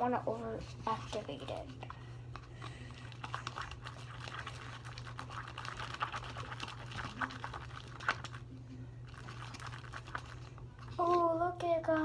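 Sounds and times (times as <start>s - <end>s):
slime stirred in plastic bowl: 0.3s - 12.0s.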